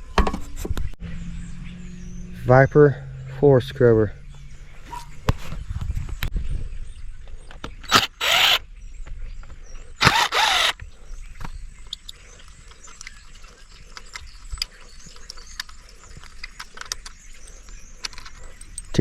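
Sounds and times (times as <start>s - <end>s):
cordless drill bursts: 7.9s - 8.6s, 10.0s - 10.8s.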